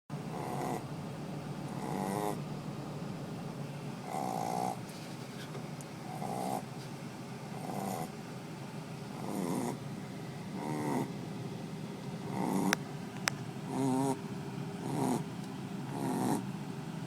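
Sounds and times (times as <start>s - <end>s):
dog snoring: 0.2s - 0.9s, 1.6s - 3.4s, 4.0s - 4.9s, 6.0s - 6.7s, 7.4s - 8.2s, 9.1s - 9.9s, 10.5s - 11.2s, 12.2s - 12.8s, 13.6s - 14.2s, 14.8s - 16.5s.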